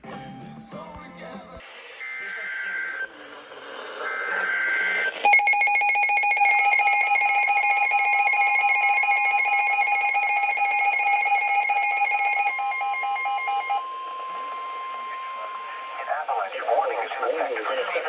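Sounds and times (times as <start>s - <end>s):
rapid electronic beeping: 4.1s - 16.0s
steady alarm tone: 5.2s - 16.0s.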